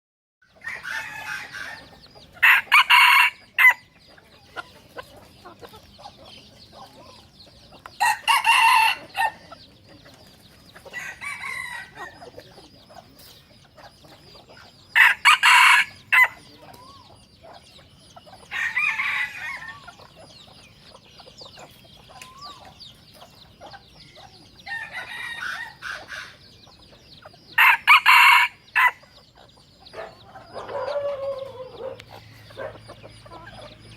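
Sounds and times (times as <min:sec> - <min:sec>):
chickens clucking: 0:00.4 - 0:33.9
rooster crowing: 0:00.6 - 0:03.8, 0:08.0 - 0:09.4, 0:11.0 - 0:12.2, 0:15.0 - 0:16.4, 0:18.5 - 0:19.8, 0:27.6 - 0:29.0.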